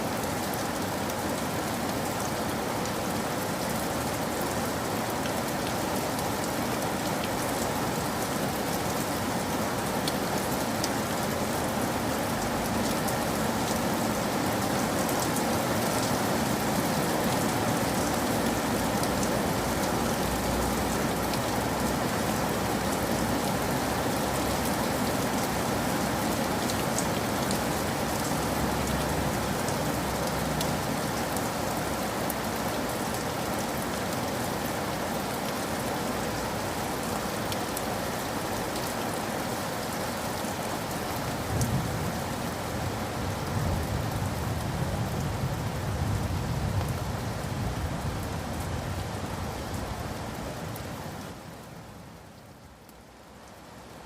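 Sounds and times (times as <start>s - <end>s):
heavy rain falling: 0.0s - 54.0s.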